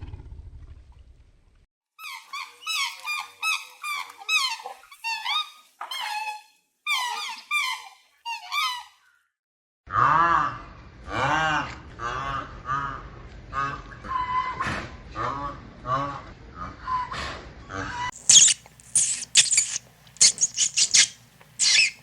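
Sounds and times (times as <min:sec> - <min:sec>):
high squeaky animal calls: 0:02.0 - 0:09.0, 0:18.0 - 0:22.0.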